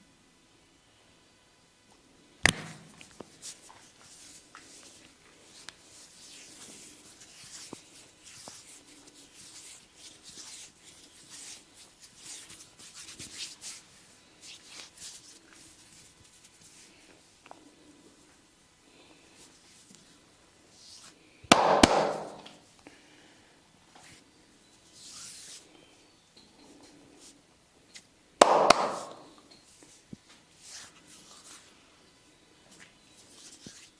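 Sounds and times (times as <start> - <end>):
hands rubbing skin and hair: 2.5 - 17.0, 20.8 - 22.6, 28.0 - 31.7, 32.7 - 33.9.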